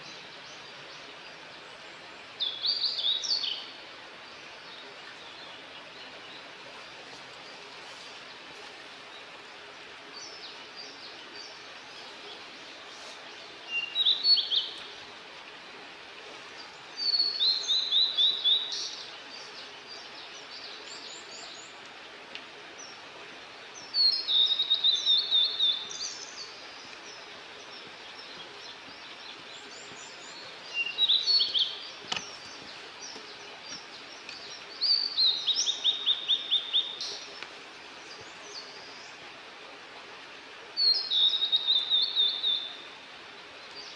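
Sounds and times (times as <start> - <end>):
small bird singing: 0.0 - 3.7, 10.2 - 14.9, 16.6 - 21.8, 23.7 - 39.2, 40.8 - 42.9
steady outdoor hiss: 0.0 - 43.9.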